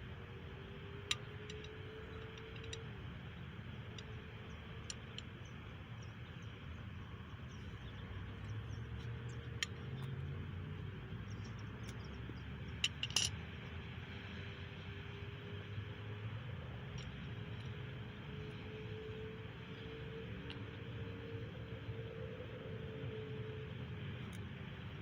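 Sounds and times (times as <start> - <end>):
faint hum: 0.0 - 25.0
small clicks: 0.9 - 3.0, 3.8 - 5.6, 11.3 - 13.6
clatter of clicks: 12.8 - 13.3.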